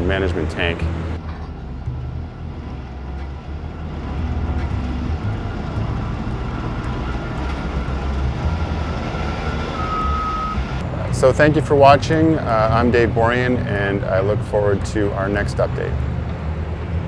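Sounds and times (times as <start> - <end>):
construction machinery engine rumble: 0.0 - 17.0.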